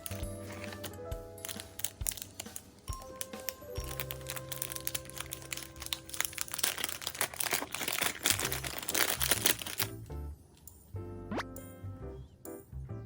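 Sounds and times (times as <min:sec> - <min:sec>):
packaging crinkling: 0:00.0 - 0:10.1
background music with bass line: 0:11.0 - 0:13.0.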